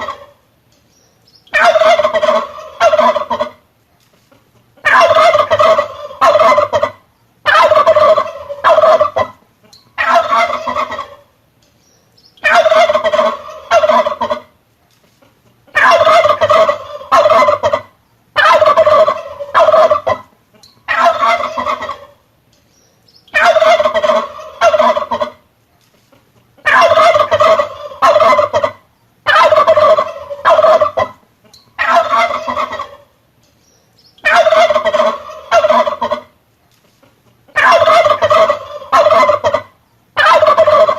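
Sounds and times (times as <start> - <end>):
turkey gobbling: 0.0 - 0.4, 1.4 - 3.7, 4.5 - 11.4, 12.3 - 14.6, 15.2 - 22.3, 23.2 - 25.5, 26.1 - 33.2, 34.0 - 36.4, 37.0 - 40.9.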